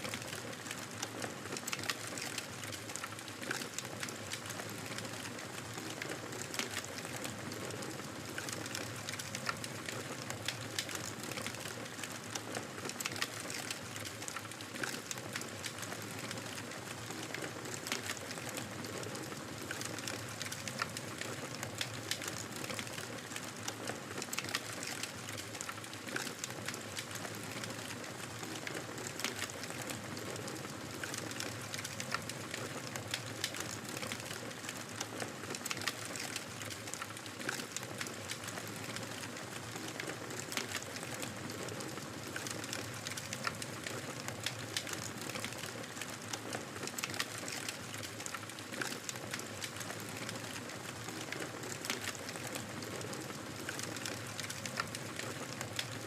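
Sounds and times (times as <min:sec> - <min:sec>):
fire crackling in a fireplace: 0:00.0 - 0:56.0.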